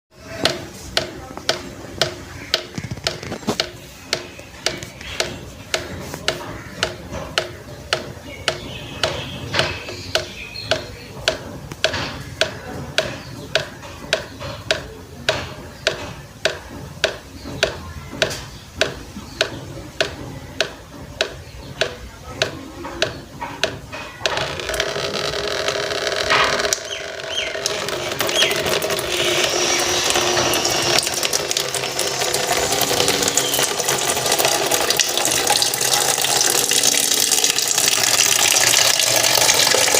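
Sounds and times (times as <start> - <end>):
water drops plopping into water: 0.4 - 23.8, 26.1 - 39.9.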